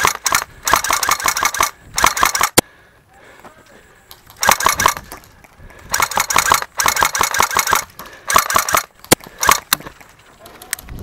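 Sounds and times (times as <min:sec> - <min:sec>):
airsoft gun full-auto bursts: 0:00.0 - 0:02.6, 0:04.4 - 0:05.0, 0:05.9 - 0:09.7.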